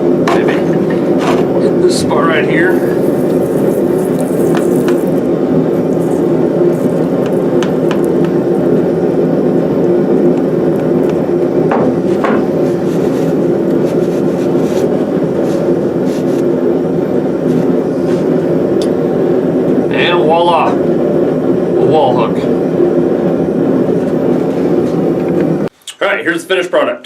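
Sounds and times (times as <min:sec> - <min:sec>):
motor hum: 0:02.3 - 0:16.0.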